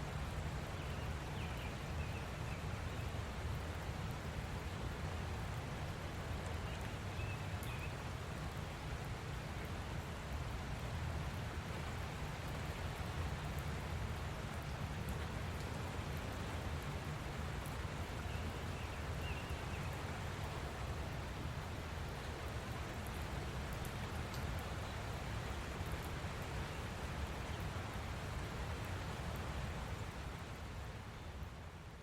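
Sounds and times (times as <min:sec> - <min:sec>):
light rain falling: 0:00.0 - 0:32.0.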